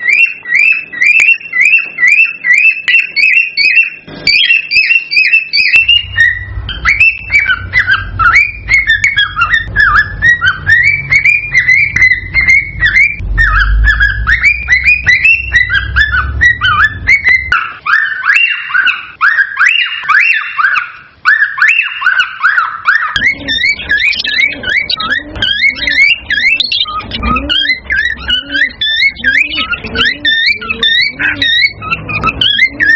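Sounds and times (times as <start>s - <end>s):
cockatiel whistling warble: 0.0s - 32.9s
low hum: 5.8s - 17.6s.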